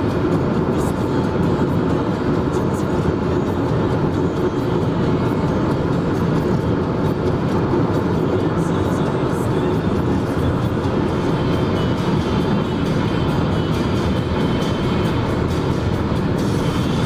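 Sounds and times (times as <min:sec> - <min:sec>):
car road noise: 0:00.0 - 0:17.0.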